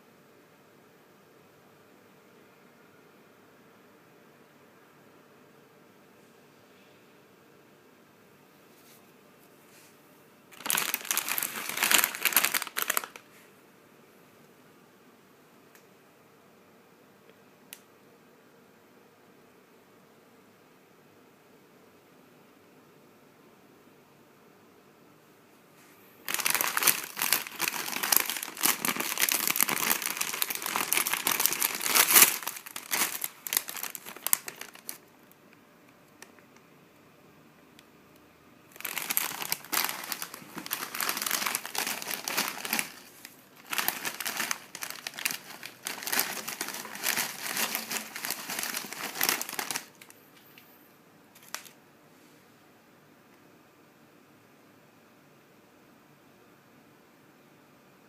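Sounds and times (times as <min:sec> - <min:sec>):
chip packet crinkling: 0:10.5 - 0:13.3, 0:26.2 - 0:35.1, 0:38.7 - 0:50.2, 0:51.4 - 0:51.8.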